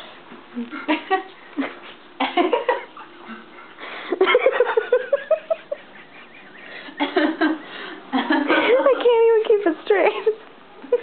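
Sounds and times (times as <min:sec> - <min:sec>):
person laughing: 0:00.6 - 0:08.8.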